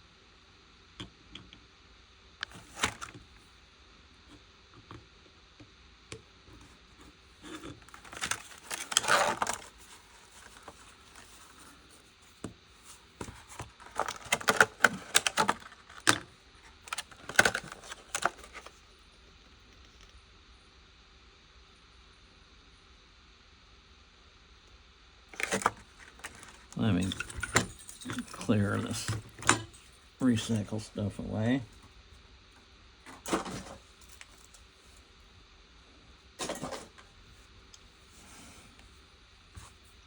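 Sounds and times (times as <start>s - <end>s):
plastic packaging crinkling: 7.9s - 11.8s, 12.9s - 16.2s, 16.8s - 18.7s, 25.4s - 29.6s.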